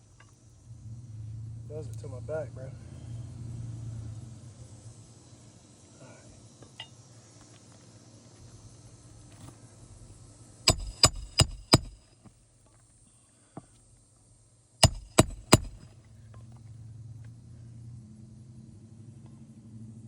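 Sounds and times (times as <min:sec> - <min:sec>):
hammer striking metal: 0:10.7 - 0:12.0, 0:14.8 - 0:15.9.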